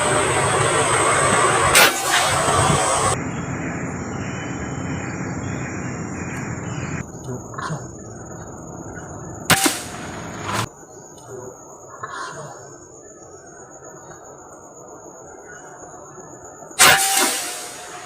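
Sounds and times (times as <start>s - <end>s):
steady background hiss: 0.0s - 18.0s
air rifle shot: 0.8s - 3.1s, 9.5s - 10.7s, 16.8s - 18.0s.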